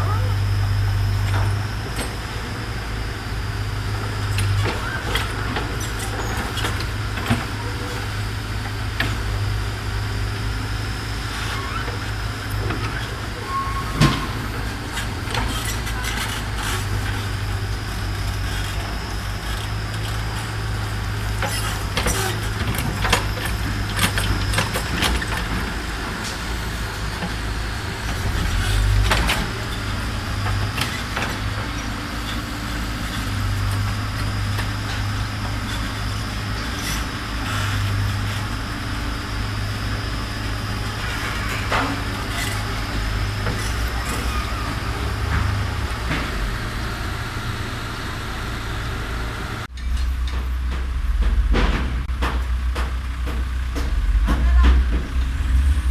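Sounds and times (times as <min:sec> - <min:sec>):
diesel engine running: 0:00.0 - 0:55.9.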